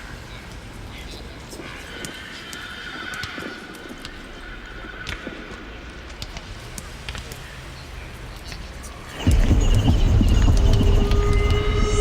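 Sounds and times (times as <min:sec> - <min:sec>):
ambient electronic music: 0:09.1 - 0:12.0.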